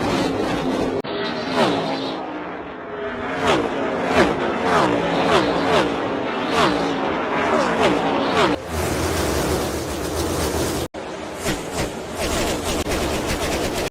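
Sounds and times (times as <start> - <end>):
race cars passing by: 0.0 - 11.4
rough steady engine noise: 12.2 - 13.9.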